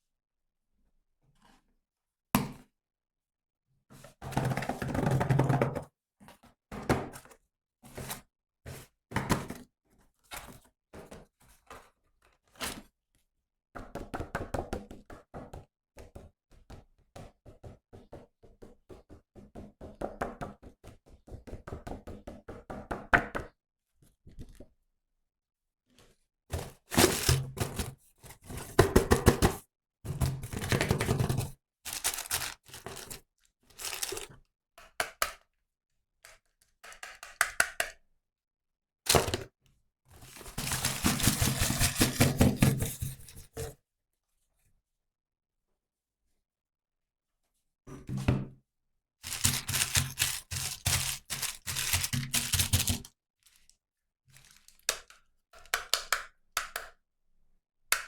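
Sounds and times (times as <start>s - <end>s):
handling toys and packaging: 26.6s - 28.8s, 30.4s - 34.4s, 40.2s - 43.6s, 49.2s - 53.7s, 54.4s - 54.9s.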